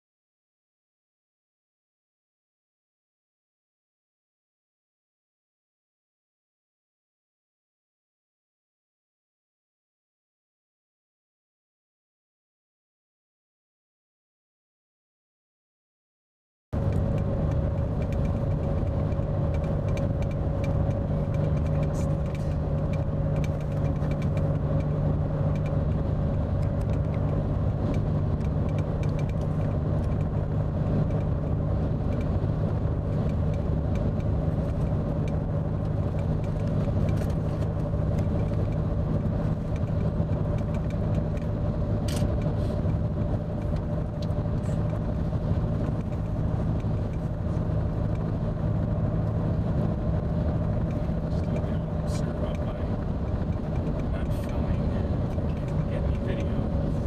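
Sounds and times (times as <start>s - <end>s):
car engine humming: 16.8s - 57.0s.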